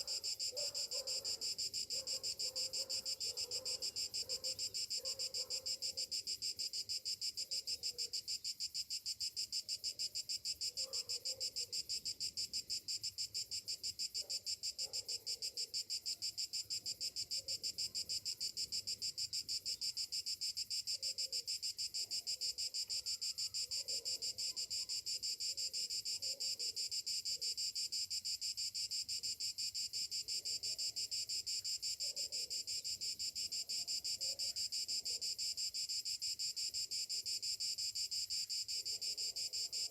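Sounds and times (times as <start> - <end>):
cicadas singing: 0.0 - 39.9.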